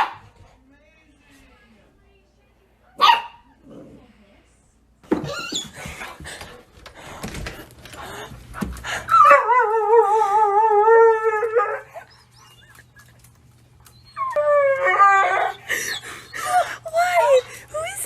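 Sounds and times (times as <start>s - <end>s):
dog howling: 9.1s - 12.8s, 13.9s - 18.0s.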